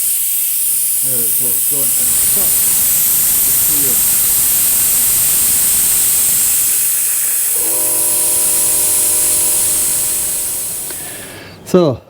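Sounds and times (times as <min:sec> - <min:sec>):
brake bleeder hissing: 0:00.0 - 0:12.0
steady multi-tone hum: 0:00.0 - 0:12.0.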